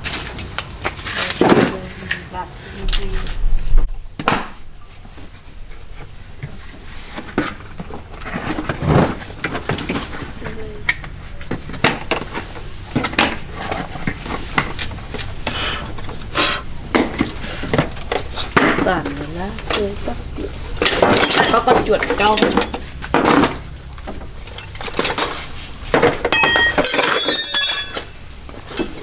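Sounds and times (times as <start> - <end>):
knocks clicks and scrapes of tools: 17.0 - 29.0.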